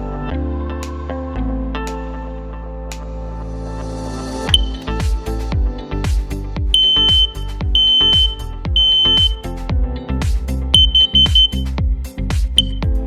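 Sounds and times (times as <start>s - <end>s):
electronic music with kick drum: 4.5s - 13.0s
alarm high-pitched beeps: 4.6s - 4.9s, 6.8s - 9.4s, 10.8s - 11.6s.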